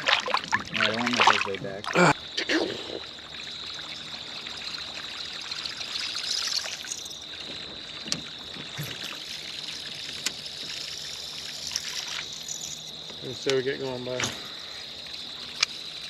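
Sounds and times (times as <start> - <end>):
water lapping against boat: 0.0 - 12.3
high-pitched insect-like drone: 2.4 - 16.0.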